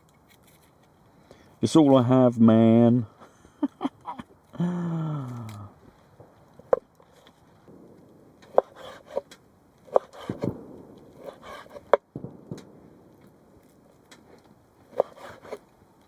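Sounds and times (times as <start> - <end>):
knife chopping on a board: 9.9 - 10.5, 14.9 - 15.6.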